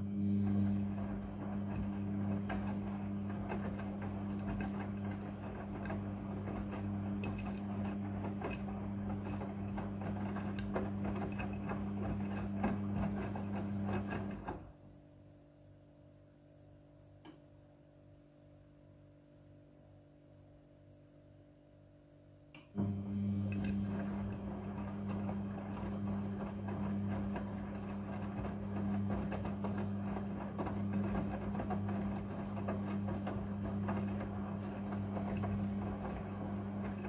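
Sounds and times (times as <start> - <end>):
washing machine drum motor humming: 0.0 - 14.8, 22.7 - 37.0.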